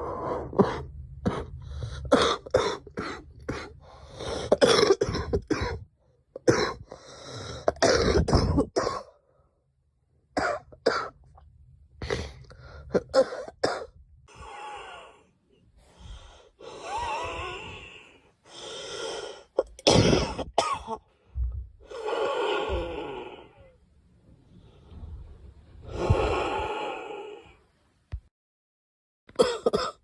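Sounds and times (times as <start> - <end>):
girl coughing: 4.5 - 5.8, 7.7 - 9.0, 13.0 - 14.0, 19.7 - 21.0, 29.4 - 30.0
soft breaths: 14.3 - 19.6, 21.1 - 27.8.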